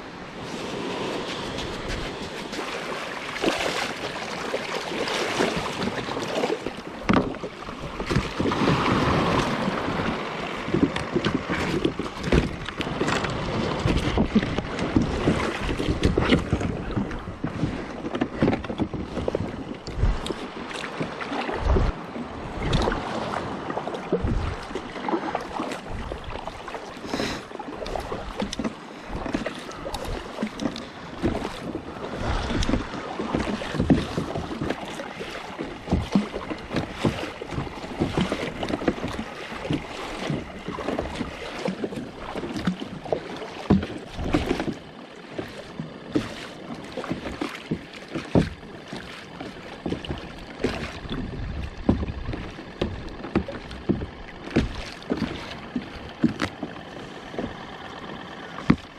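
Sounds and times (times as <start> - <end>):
water splashing around a kayak: 0.0 - 58.9
knocks on kayak: 7.0 - 7.4, 49.9 - 55.3, 58.6 - 58.9.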